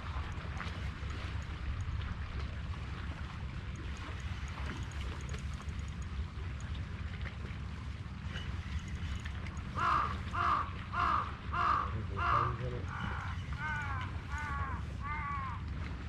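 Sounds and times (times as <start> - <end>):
crow cawing: 9.8 - 15.6.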